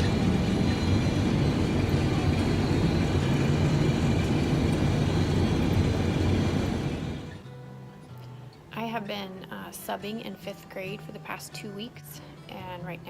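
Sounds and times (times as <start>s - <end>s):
heavy vehicle engine rumbling: 0.0s - 7.4s.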